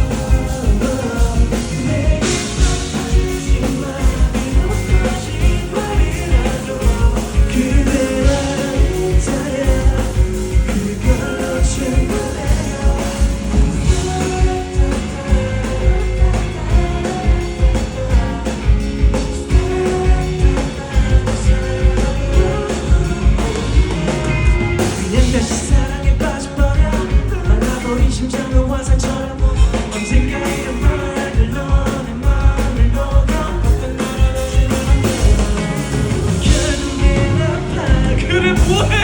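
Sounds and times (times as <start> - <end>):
live pop-rock band: 0.0 - 39.0
person singing: 0.0 - 39.0.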